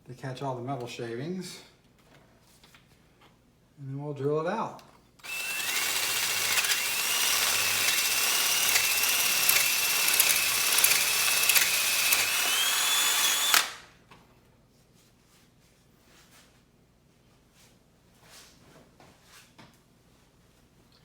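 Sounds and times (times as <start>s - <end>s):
power drill whining: 5.2s - 13.9s.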